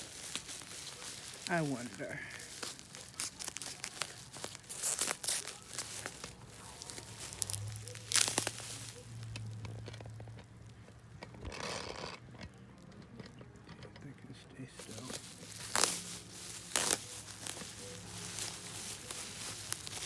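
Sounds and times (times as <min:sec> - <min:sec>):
packaging crinkling and tearing: 0:00.0 - 0:13.4, 0:14.8 - 0:20.0.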